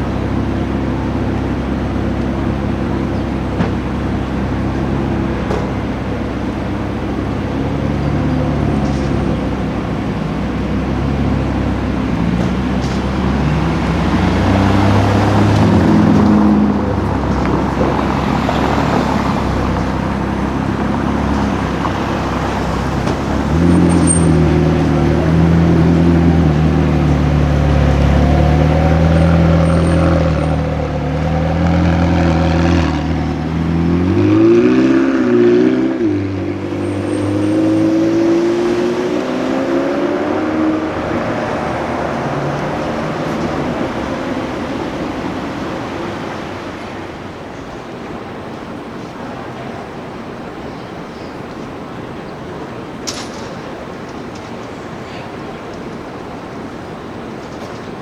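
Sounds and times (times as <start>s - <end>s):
sports car engine: 0.0s - 58.0s
street traffic: 0.0s - 58.0s.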